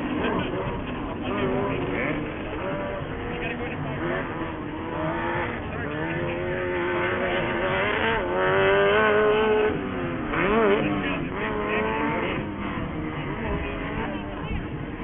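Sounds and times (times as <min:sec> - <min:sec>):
buggy engine revving hard: 0:00.0 - 0:15.0.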